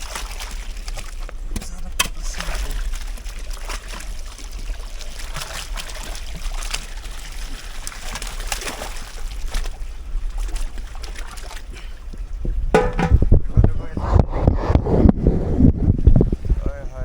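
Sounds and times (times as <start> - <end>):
water splashing and dribbling: 0.0 - 12.0
steady low rumble: 13.1 - 16.6.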